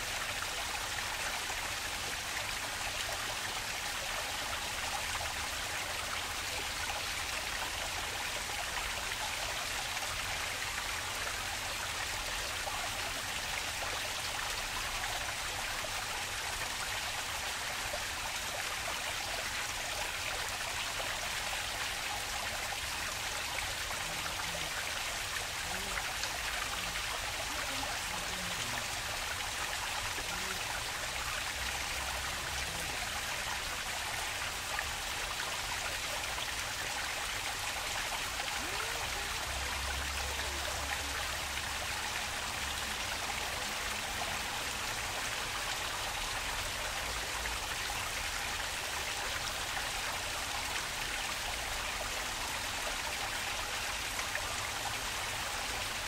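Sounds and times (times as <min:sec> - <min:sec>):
stream water rushing: 0:00.0 - 0:56.0.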